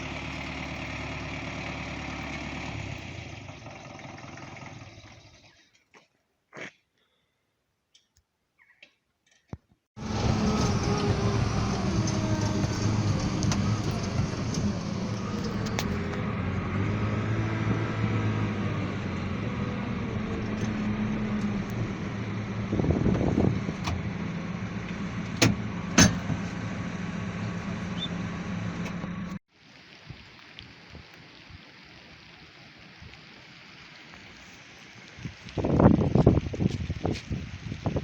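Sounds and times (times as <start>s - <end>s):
vehicle engine running: 0.0s - 5.5s, 10.0s - 29.4s.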